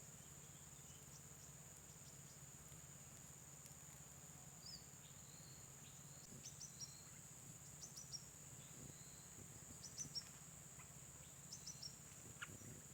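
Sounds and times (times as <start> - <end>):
faint high insect drone: 0.0 - 12.9
small bird chirping: 4.6 - 12.9.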